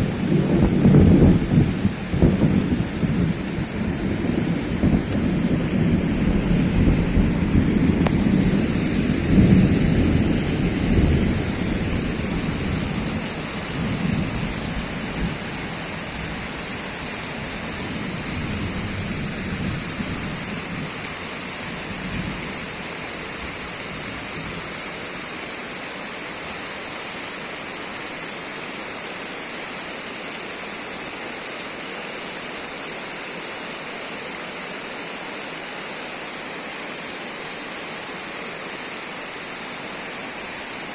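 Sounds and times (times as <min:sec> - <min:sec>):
thunder rumble: 0:00.0 - 0:16.4
heavy rain pouring: 0:00.0 - 0:40.9.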